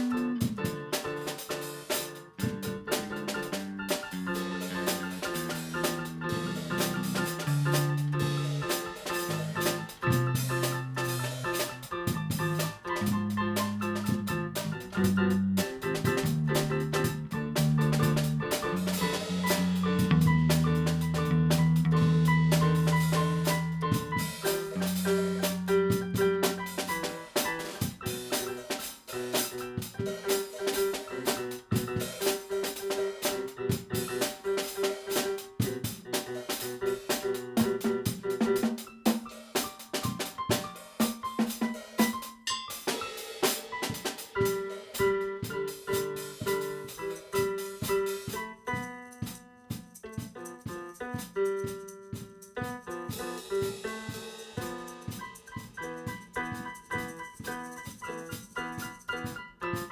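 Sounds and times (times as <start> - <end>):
keyboard notes: 0.0 - 28.9
instrumental music with drum beat: 0.0 - 59.9.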